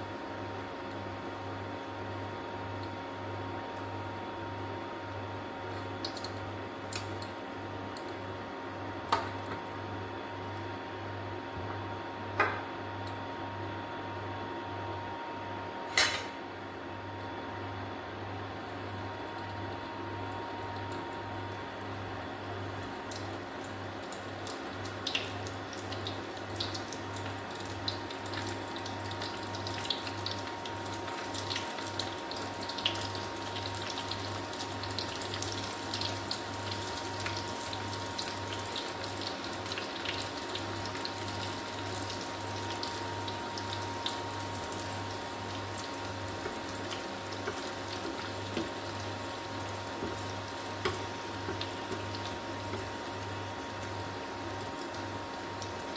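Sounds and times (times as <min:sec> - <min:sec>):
food deep-frying in oil: 0:00.0 - 0:10.8, 0:18.5 - 0:55.9.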